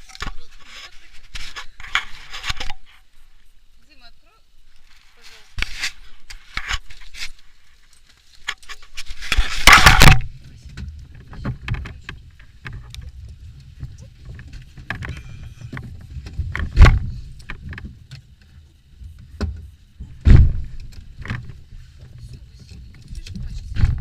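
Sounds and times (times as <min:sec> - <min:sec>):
rustling: 0:00.0 - 0:24.0
car door thump: 0:20.2 - 0:20.8.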